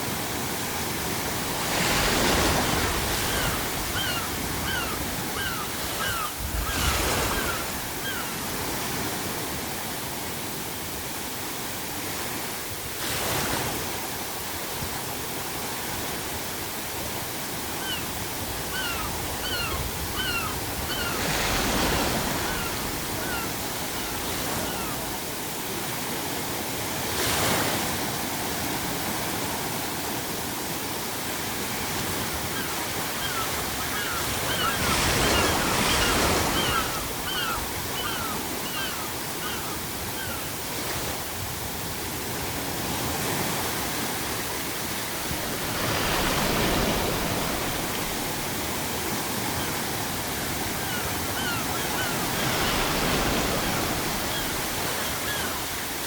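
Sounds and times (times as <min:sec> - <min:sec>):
ocean waves breaking: 0:00.0 - 0:56.0
seagulls calling: 0:01.8 - 0:09.0, 0:17.7 - 0:25.2, 0:32.2 - 0:40.9, 0:49.4 - 0:56.0.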